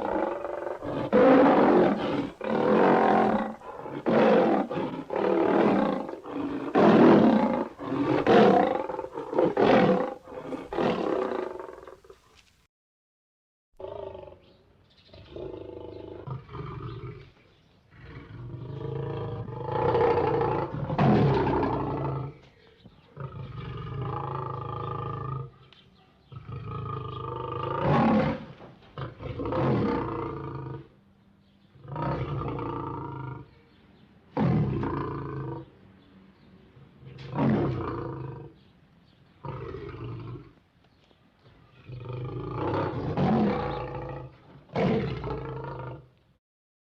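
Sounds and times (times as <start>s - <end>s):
lion roaring: 0.0s - 12.2s, 17.9s - 22.4s, 23.1s - 25.6s, 26.3s - 31.0s, 31.8s - 33.5s, 34.3s - 35.8s, 37.0s - 38.6s, 39.4s - 40.6s, 41.8s - 46.1s.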